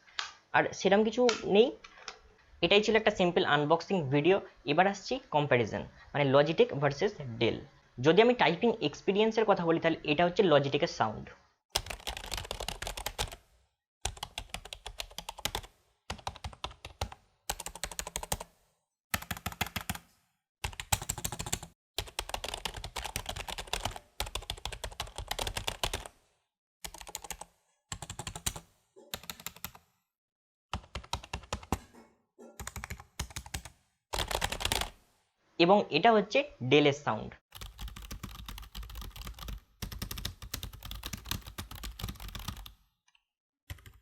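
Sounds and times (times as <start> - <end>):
keyboard typing clacks: 11.8 - 13.4, 14.1 - 18.4, 19.2 - 20.0, 20.6 - 26.1, 26.9 - 29.8, 30.8 - 31.8, 32.6 - 35.0, 37.6 - 42.7.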